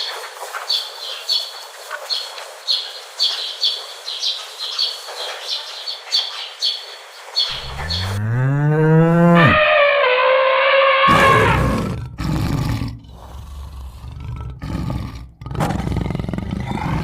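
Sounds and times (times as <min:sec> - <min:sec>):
bird chirping: 0:00.0 - 0:12.0
outdoor background hiss: 0:00.0 - 0:17.0
deep animal call rising in pitch: 0:07.5 - 0:17.0.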